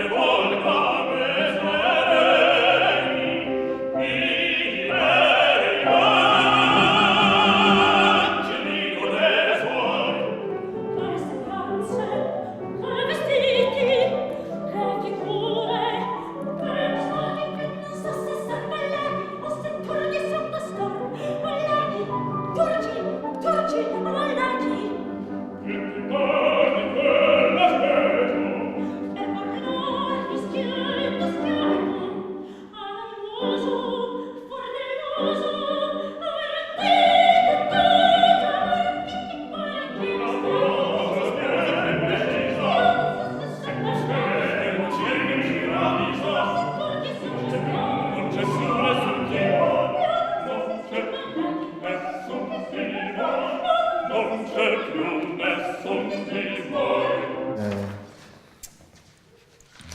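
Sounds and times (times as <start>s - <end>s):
musical accompaniment: 0.0s - 32.7s
operatic singing: 0.0s - 57.9s.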